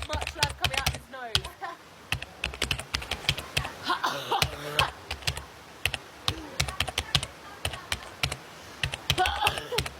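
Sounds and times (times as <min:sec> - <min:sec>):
keyboard typing clicks: 0:00.0 - 0:01.5, 0:02.1 - 0:03.7, 0:05.1 - 0:09.9.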